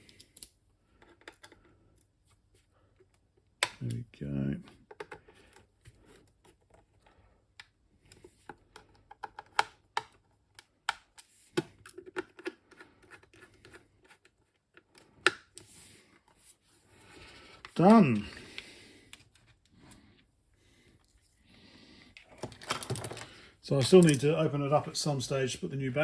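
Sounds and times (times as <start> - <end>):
small parts being handled: 22.1 - 24.5.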